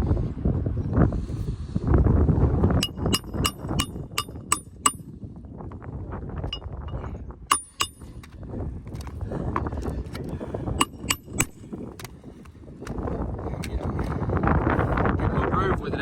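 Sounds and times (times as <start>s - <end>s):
wind: 0.0s - 16.0s
hammer striking nails: 2.8s - 5.0s, 7.5s - 8.3s, 10.8s - 11.6s.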